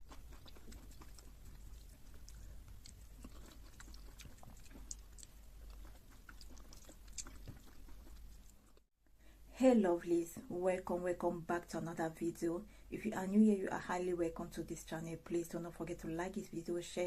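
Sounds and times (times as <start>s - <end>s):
chewing with wet mouth clicks: 0.0s - 8.9s.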